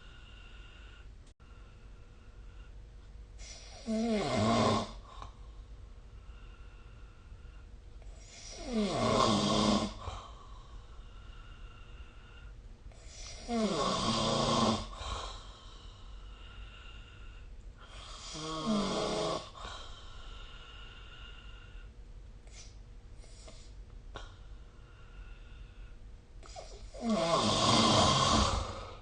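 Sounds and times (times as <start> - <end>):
person snoring: 3.4 - 5.2, 8.2 - 10.3, 13.0 - 15.5, 17.8 - 20.5, 26.4 - 29.0.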